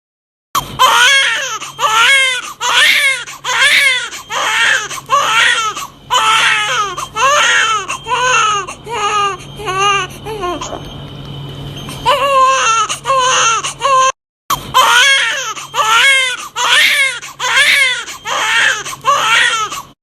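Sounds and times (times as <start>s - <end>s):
baby crying: 0.6s - 10.8s, 12.0s - 19.9s
faint low hum: 0.8s - 14.1s.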